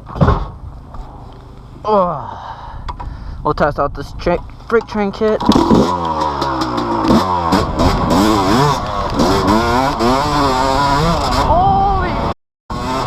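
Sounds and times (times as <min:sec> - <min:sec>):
dirt bike engine revving: 0:05.4 - 0:13.0.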